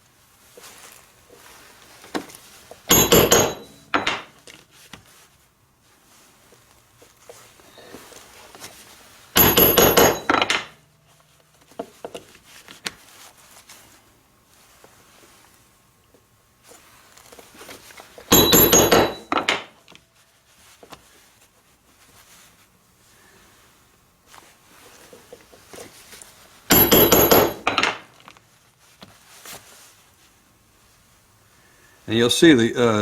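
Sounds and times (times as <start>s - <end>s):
tool knocks being set down: 2.2s - 4.4s, 9.4s - 10.8s, 18.2s - 19.8s, 26.7s - 28.1s
mallet striking leather punch: 2.9s - 4.2s, 9.4s - 10.4s, 18.3s - 19.3s, 26.7s - 27.7s.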